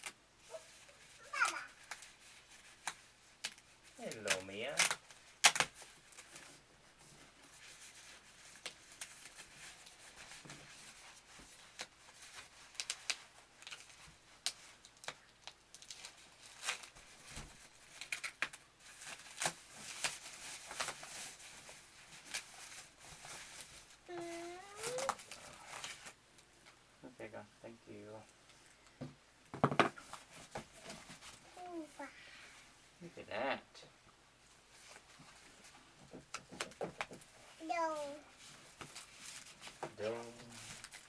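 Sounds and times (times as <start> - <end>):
packing material crinkling: 0.0 - 6.6, 7.5 - 26.2, 37.8 - 41.0.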